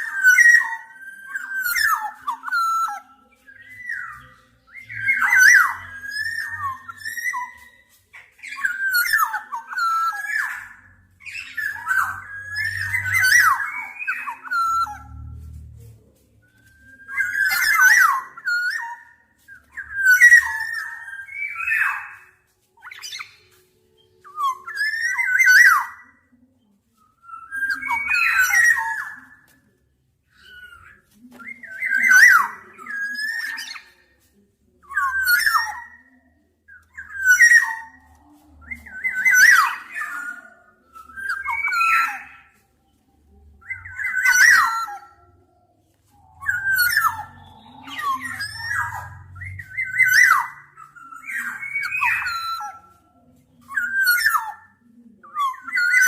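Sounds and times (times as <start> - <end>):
oriole singing fluty whistles: 0.0 - 15.6, 16.5 - 26.3, 46.3 - 53.1.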